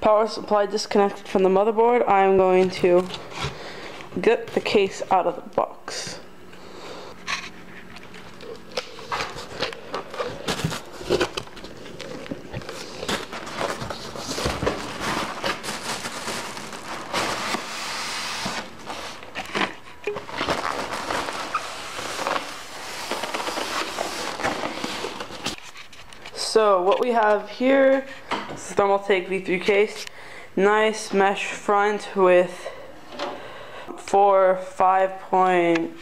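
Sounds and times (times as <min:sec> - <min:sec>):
cardboard packaging rustling: 0:07.4 - 0:26.4.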